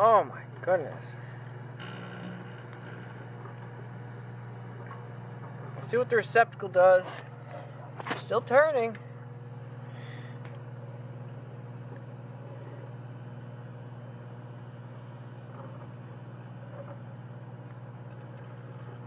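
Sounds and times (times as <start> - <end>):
microwave oven humming: 0.0 - 19.0.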